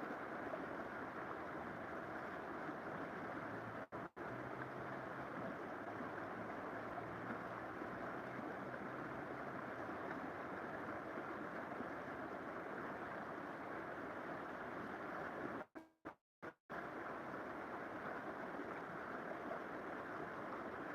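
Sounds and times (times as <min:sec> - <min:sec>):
river water rushing: 0:00.0 - 0:15.7.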